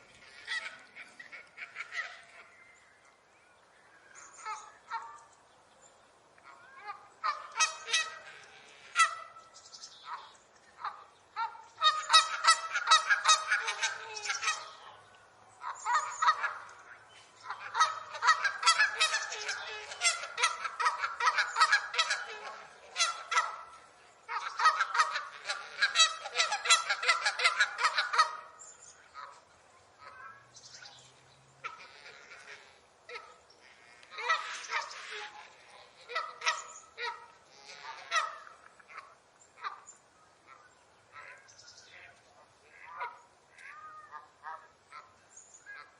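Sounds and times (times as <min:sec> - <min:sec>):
geese honking: 0:06.8 - 0:09.5, 0:10.1 - 0:15.0, 0:15.6 - 0:29.4, 0:31.6 - 0:39.9, 0:40.5 - 0:45.9.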